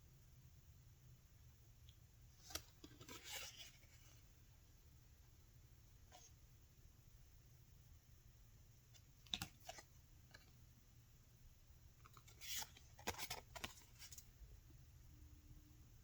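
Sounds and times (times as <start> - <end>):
paper rustling and crinkling: 12.0 - 14.3.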